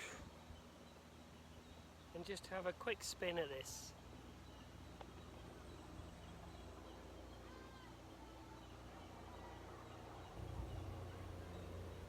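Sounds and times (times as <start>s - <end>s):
faint bird chirps: 0.0s - 2.8s.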